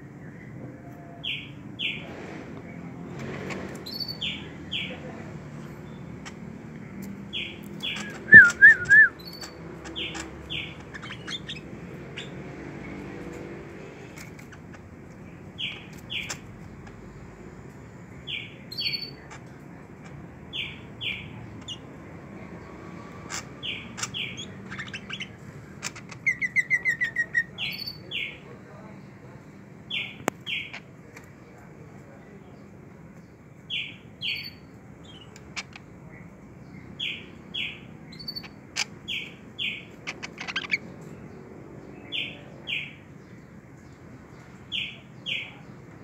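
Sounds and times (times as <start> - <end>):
pet bird chirping: 3.8 - 12.7, 14.1 - 17.0, 18.2 - 19.6, 23.1 - 28.5, 33.7 - 45.6
bird trilling: 7.4 - 12.3
bird warbling: 7.8 - 9.4.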